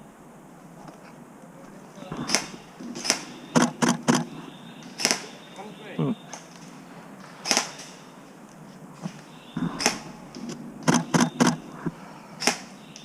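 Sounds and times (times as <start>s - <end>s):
soft rustling of movement: 0.4s - 12.8s
camera shutter clicks: 2.3s - 4.3s, 10.8s - 11.6s.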